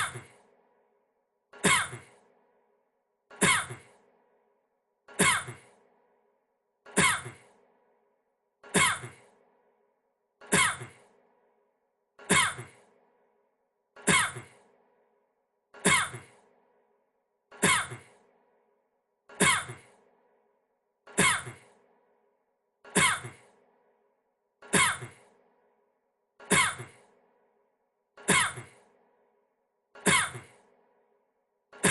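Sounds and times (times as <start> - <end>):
man coughing: 14.0 - 14.6.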